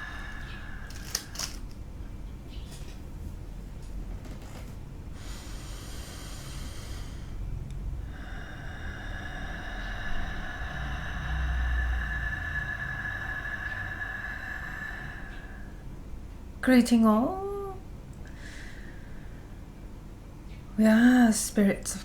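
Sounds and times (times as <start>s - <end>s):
low rumble: 6.9s - 16.6s.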